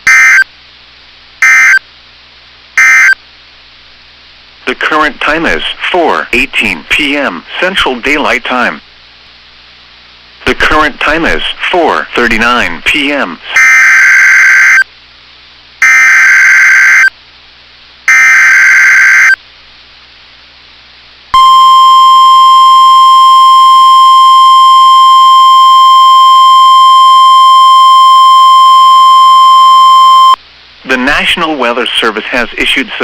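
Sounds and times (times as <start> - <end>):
steady warning alarm tone: 0.0 - 0.5, 1.4 - 1.8, 2.8 - 3.2, 13.6 - 14.9, 15.8 - 17.1, 18.1 - 19.4, 21.4 - 30.4
buzzy digital data chirps: 2.8 - 3.2, 18.1 - 19.4.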